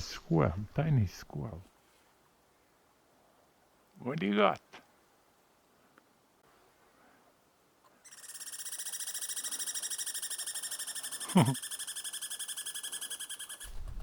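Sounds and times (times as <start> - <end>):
squirrel chattering trill: 8.1 - 13.7.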